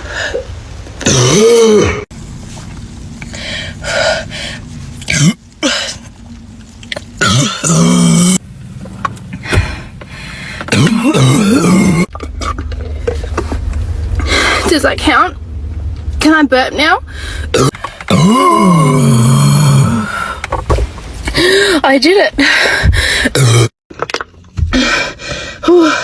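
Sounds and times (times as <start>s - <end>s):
girls burping: 10.7s - 12.1s, 17.5s - 20.1s.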